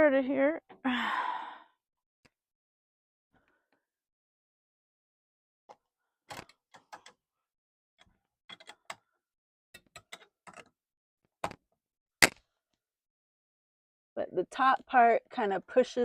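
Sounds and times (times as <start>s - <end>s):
plastic fitting clicks and knocks: 6.3s - 7.1s.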